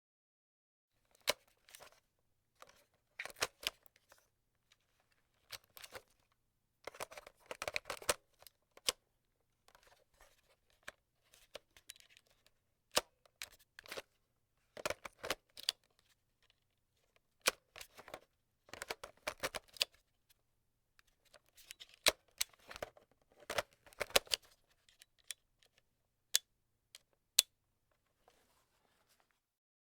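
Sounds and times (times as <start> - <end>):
cassette tape plastic clatter: 6.9 - 9.0, 14.8 - 16.0, 18.7 - 20.0, 21.6 - 25.8.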